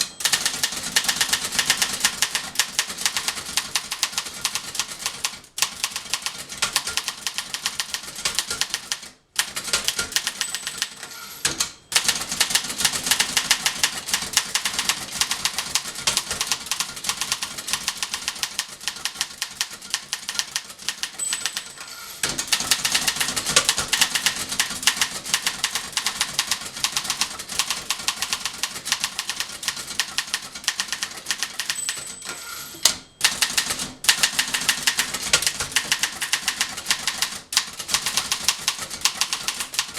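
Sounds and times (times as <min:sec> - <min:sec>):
typewriter typing: 0:00.2 - 0:39.9
typewriter margin bell ringing: 0:10.1 - 0:12.6, 0:20.9 - 0:25.1, 0:30.9 - 0:35.0.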